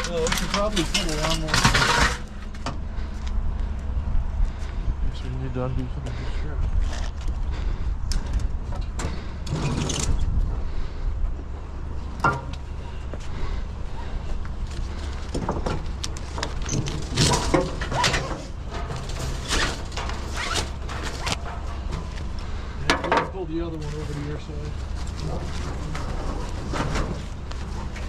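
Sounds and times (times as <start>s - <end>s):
scrap metal knocks and clanks: 0.0s - 2.8s, 14.9s - 28.0s
steady low rumble: 0.0s - 28.0s.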